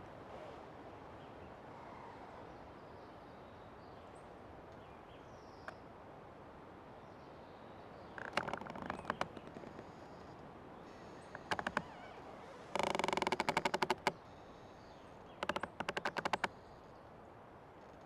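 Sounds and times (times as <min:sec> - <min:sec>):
forest ambience: 0:06.8 - 0:18.0
tree trunk creaking: 0:08.1 - 0:16.7.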